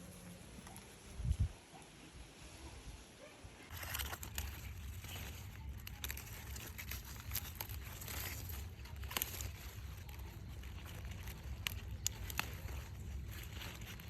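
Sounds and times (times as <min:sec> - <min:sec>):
plant material rustling and crackling: 0:03.7 - 0:14.0
low steady rumble: 0:04.2 - 0:14.0.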